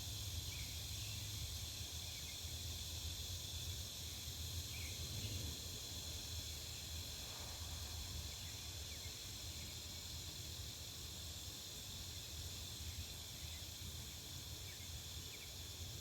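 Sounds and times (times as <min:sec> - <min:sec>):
high-pitched insect chorus: 0:00.0 - 0:16.0.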